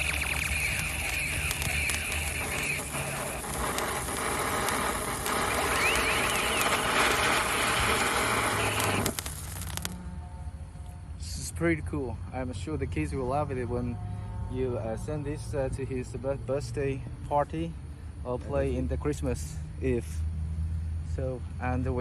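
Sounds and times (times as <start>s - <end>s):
electronic pitch-sweeping sound effects: 0.0s - 9.2s
spark fountain hissing and crackling: 0.0s - 10.0s.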